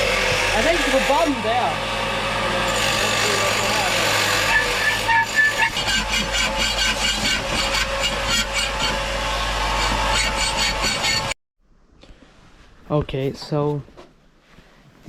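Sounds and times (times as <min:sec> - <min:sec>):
power tool running: 0:00.0 - 0:11.4
rasping strokes: 0:00.0 - 0:11.4.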